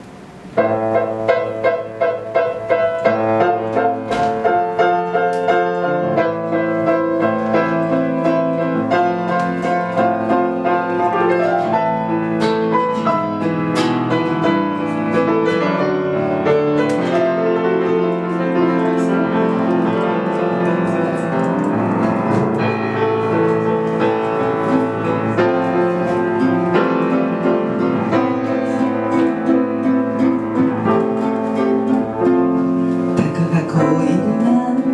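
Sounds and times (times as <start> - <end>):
slow ballad backing track with piano: 0.0 - 34.9.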